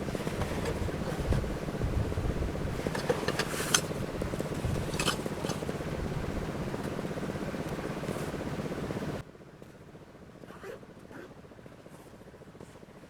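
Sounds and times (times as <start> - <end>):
wind rumbling on microphone: 0.0 - 6.8.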